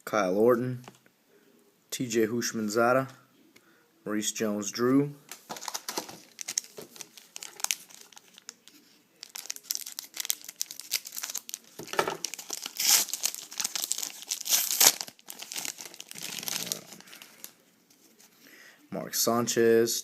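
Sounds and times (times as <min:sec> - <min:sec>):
card pack wrapper crinkling: 0:05.3 - 0:17.6.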